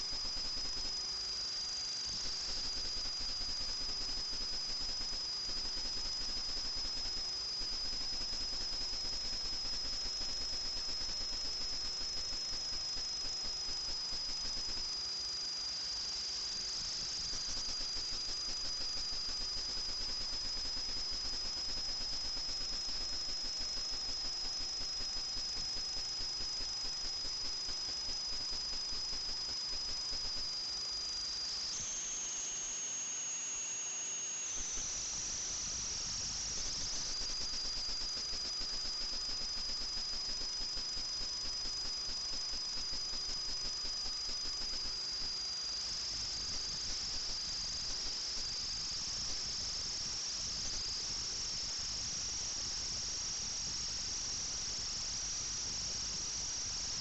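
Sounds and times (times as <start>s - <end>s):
constant hiss: 15.8s - 57.0s
drone motors whining: 31.8s - 36.6s.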